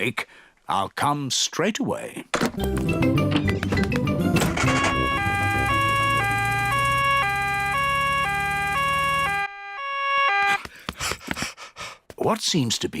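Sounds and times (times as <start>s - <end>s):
two-tone emergency siren: 4.3s - 10.6s.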